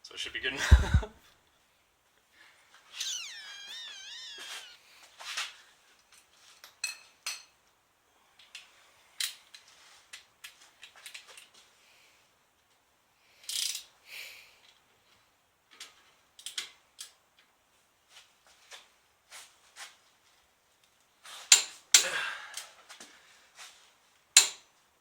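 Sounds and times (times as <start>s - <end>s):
high wavering squeal: 3.0s - 4.8s.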